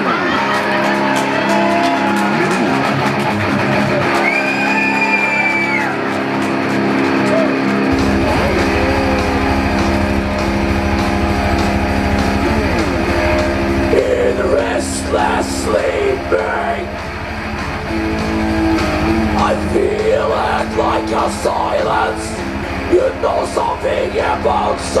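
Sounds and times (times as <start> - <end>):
rock guitar chords: 0.0 - 25.0
deep bass guitar: 5.8 - 25.0.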